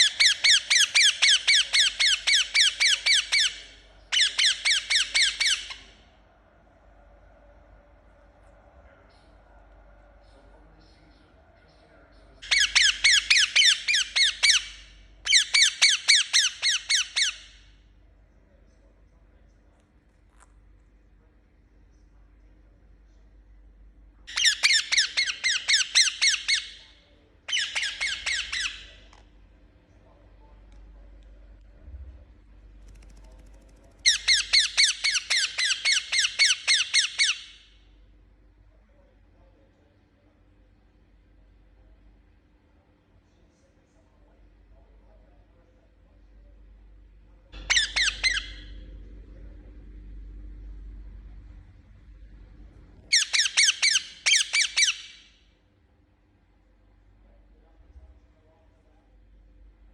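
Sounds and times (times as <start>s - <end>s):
parakeet chirping: 0.0s - 6.0s, 12.4s - 17.7s, 24.3s - 29.2s, 32.9s - 37.7s, 47.6s - 49.0s, 53.0s - 55.3s.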